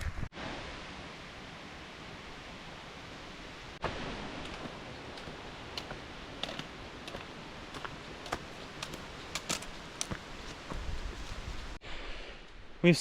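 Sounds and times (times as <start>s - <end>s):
footsteps on gravel: 4.3s - 11.8s.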